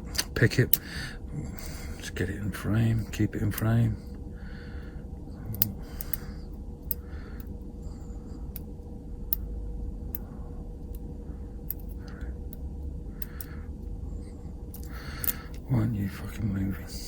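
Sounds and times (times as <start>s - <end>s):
low hum: 0.0s - 17.0s
lock pick metallic ticks: 13.2s - 13.5s.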